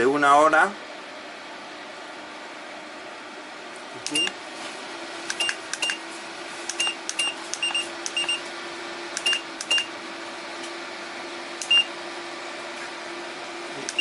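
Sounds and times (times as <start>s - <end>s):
fan heater humming: 0.0s - 14.0s
short high beeps: 6.8s - 8.4s.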